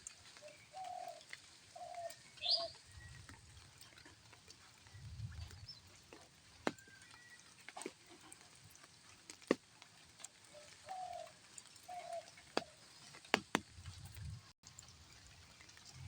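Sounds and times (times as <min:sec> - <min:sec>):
dove cooing: 0:00.4 - 0:02.8, 0:10.4 - 0:12.9.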